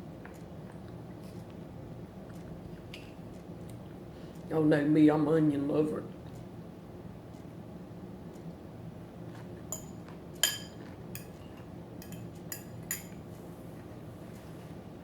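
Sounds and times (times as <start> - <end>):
cutlery clinking on a plate: 9.7 - 13.2.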